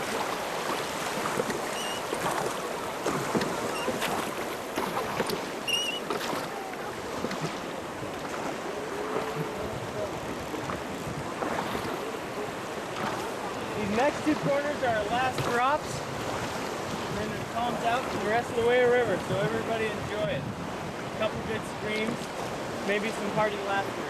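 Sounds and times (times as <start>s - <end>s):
river water rushing against raft: 0.0s - 24.0s.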